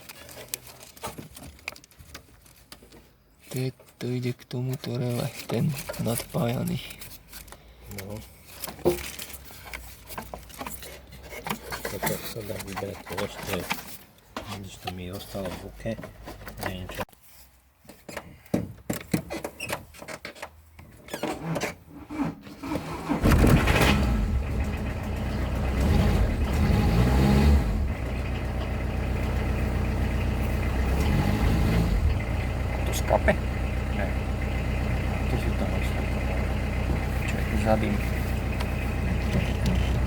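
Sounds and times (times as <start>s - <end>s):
diesel engine starting and idling: 22.0s - 40.0s
light clicks and knocks: 38.6s - 40.0s.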